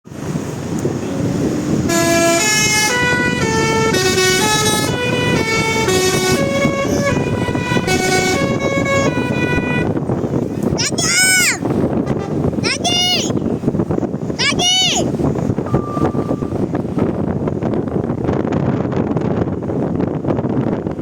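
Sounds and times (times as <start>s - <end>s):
musical air horn playing a tune: 1.8s - 10.0s
low rumble: 15.0s - 18.4s.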